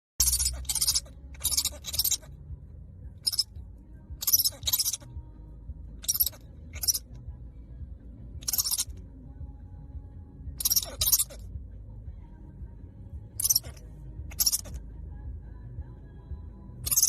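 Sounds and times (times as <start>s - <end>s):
bat chirping: 0.2s - 2.3s, 3.2s - 3.5s, 4.2s - 5.1s, 6.0s - 7.1s, 8.4s - 8.9s, 10.6s - 11.4s, 13.4s - 14.7s
faint low hum: 0.2s - 17.0s.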